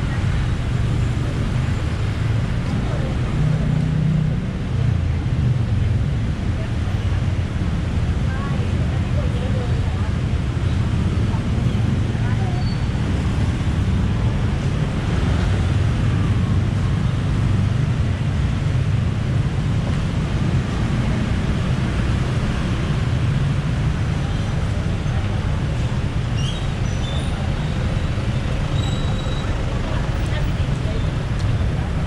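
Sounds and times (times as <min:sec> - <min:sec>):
city road traffic rumble: 0:00.0 - 0:32.0.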